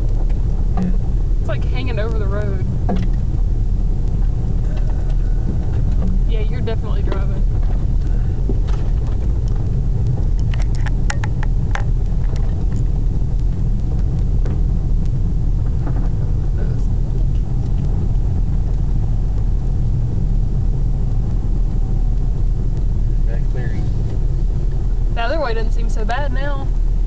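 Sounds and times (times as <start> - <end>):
car engine and tyre rumble: 0.0 - 27.0.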